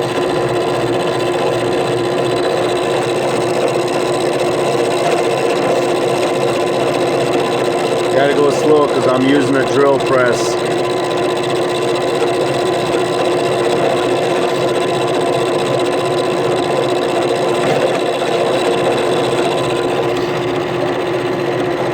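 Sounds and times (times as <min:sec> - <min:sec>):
drill press machining steel: 0:00.0 - 0:21.9.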